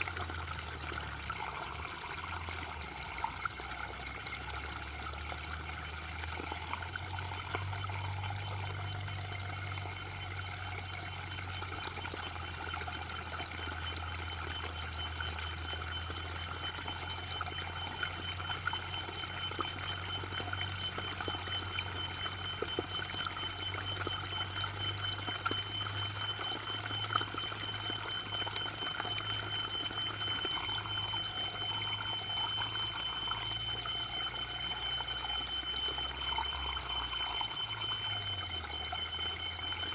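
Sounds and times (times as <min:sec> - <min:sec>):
thin steady high tone: 0:00.0 - 0:39.9.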